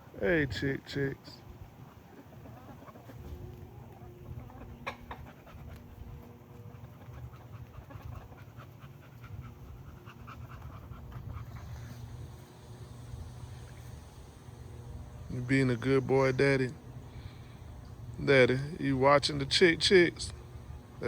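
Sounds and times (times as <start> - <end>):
low steady hum: 0.0 - 21.0
dog panting: 2.5 - 13.0.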